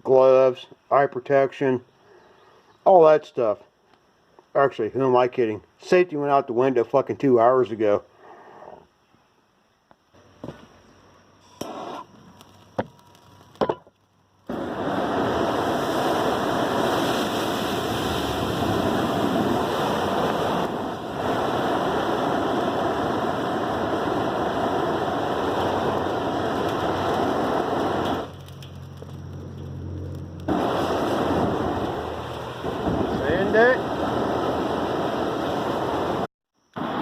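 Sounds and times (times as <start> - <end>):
loud rushing hiss: 14.5 - 28.3, 30.5 - 37.0.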